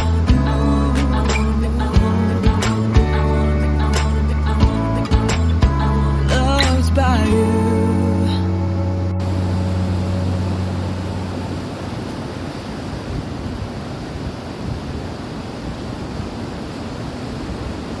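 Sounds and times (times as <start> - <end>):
low held music notes: 0.0 - 12.1
steady rushing noise: 9.2 - 15.0.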